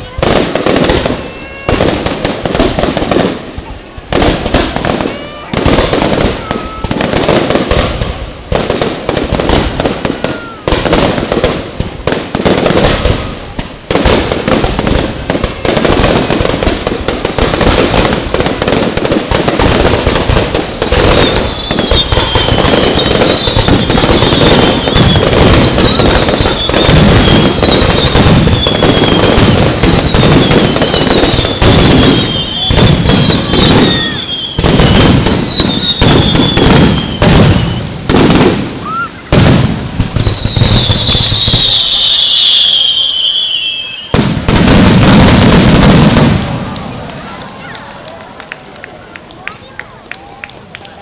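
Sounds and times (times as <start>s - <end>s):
fireworks bursting and crackling: 0.0s - 51.0s
falling firework whistles: 4.1s - 8.0s, 8.6s - 11.3s, 17.8s - 46.4s.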